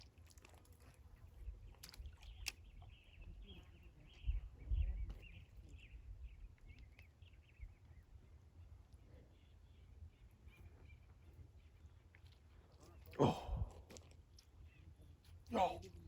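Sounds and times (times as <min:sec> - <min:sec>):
small birds chirping: 0:01.3 - 0:08.4.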